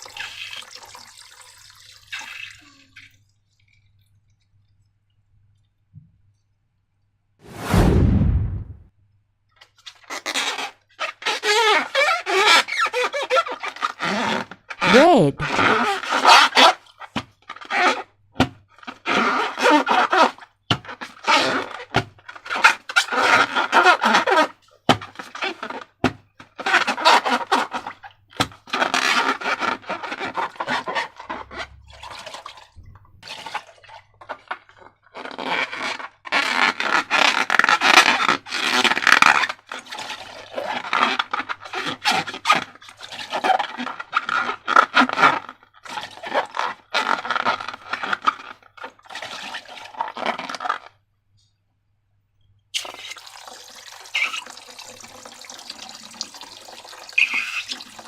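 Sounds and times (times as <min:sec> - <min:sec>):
water running from a tap: 0:00.0 - 0:03.2, 0:52.8 - 0:58.0
slime squelching: 0:56.5 - 0:58.0.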